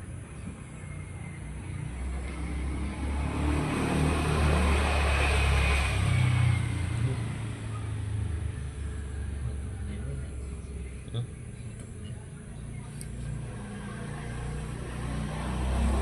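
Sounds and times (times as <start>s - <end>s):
vehicle passing by: 0.0s - 16.0s.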